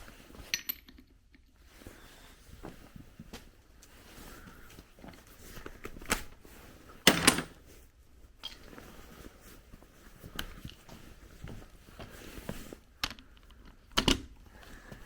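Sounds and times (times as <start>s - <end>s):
metal tools clinking and knocking: 0.4s - 1.2s, 7.1s - 7.6s.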